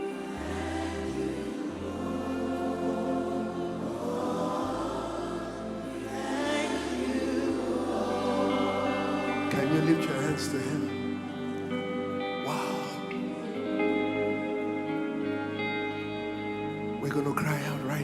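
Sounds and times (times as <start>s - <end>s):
choir singing held notes: 0.0s - 15.9s.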